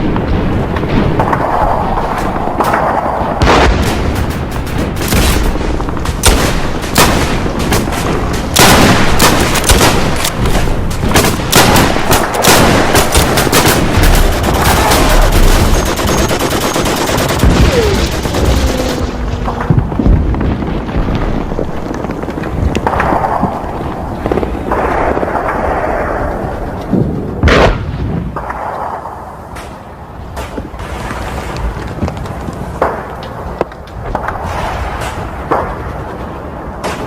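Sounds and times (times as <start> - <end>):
heavy booms: 0.0 - 16.5, 17.1 - 25.6
rifle and machine-gun fire: 0.0 - 26.1.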